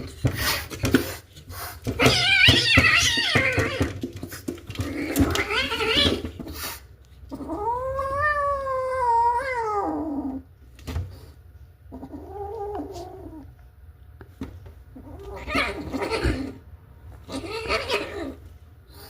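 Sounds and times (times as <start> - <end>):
cat calling: 15.0 - 16.6, 17.2 - 18.4.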